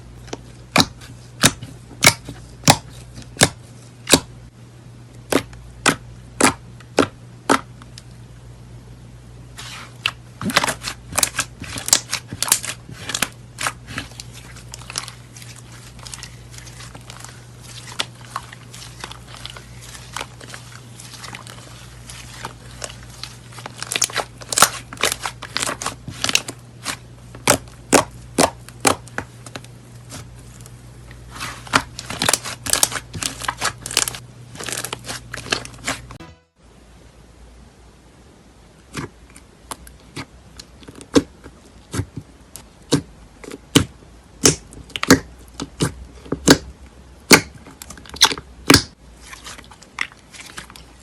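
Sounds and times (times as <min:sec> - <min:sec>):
slime popping and crackling: 0:10.0 - 0:29.6, 0:31.4 - 0:36.1, 0:47.3 - 0:50.8.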